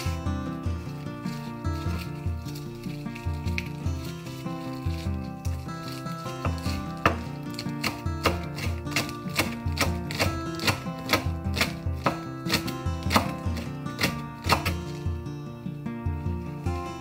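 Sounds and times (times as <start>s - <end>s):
background music: 0.0s - 17.0s
knife chopping on cutting board: 5.9s - 15.0s.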